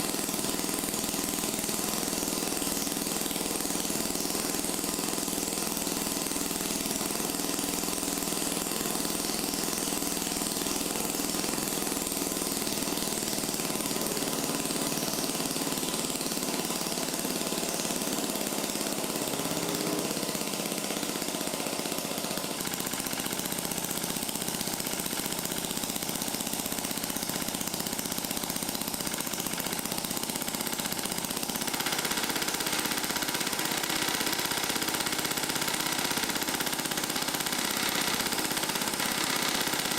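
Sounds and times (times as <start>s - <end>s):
welding arc crackling: 31.5s - 39.9s.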